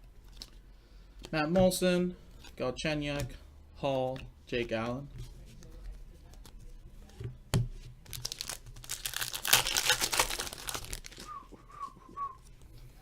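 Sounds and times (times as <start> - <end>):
foil wrapper tearing and crinkling: 8.1 - 11.3.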